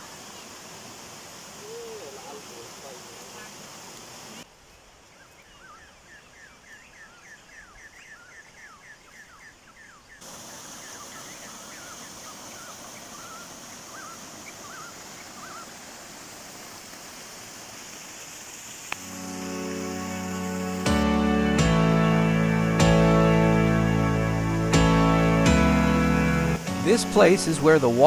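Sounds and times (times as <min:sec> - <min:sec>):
waterfall rushing: 0:00.0 - 0:04.4, 0:10.2 - 0:28.0
forest birds chirping: 0:00.0 - 0:28.0
guitar music: 0:19.0 - 0:28.0.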